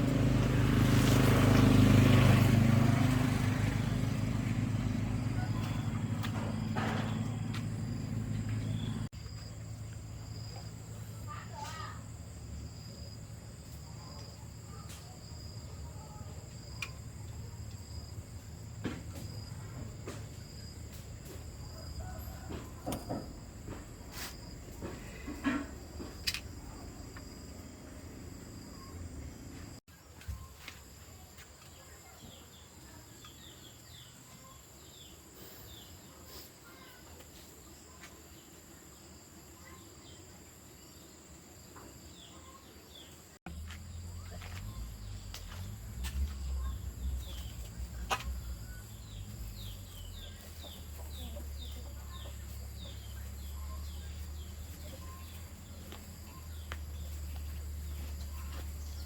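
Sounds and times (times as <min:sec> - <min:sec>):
insects trilling: 0:30.4 - 0:59.0.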